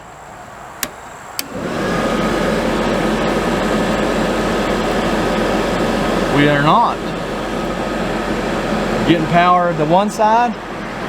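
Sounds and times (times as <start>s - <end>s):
light clicks: 0.8s - 1.6s
furnace blower fan whooshing: 0.8s - 11.0s.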